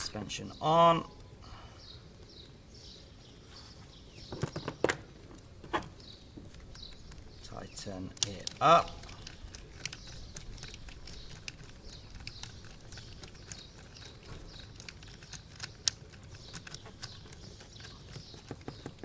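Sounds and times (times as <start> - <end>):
faint background hum: 0.0 - 19.0
small screw clicking: 8.1 - 19.0.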